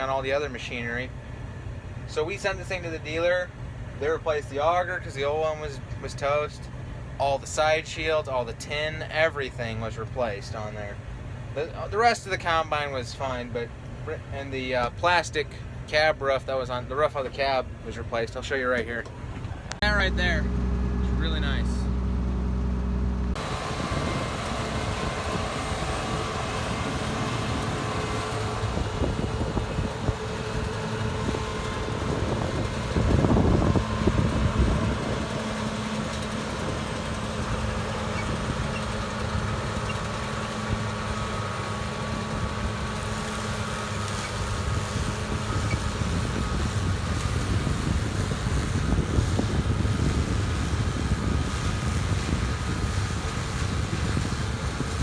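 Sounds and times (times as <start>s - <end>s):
combine harvester running: 0.0s - 55.0s.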